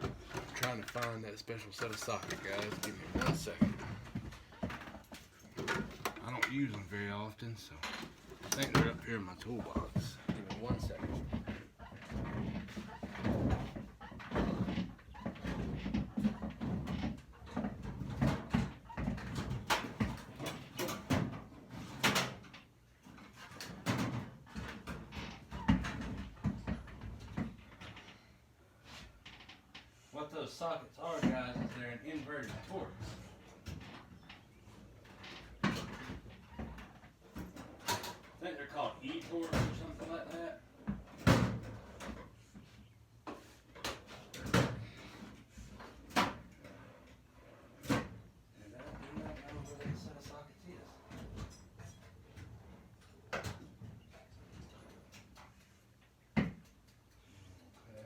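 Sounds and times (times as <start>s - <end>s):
toolbox drawers opening and shutting: 0.0s - 4.0s, 7.8s - 11.3s
drawers being moved: 0.0s - 7.0s, 7.7s - 22.4s
metal tools clattering: 0.2s - 3.7s.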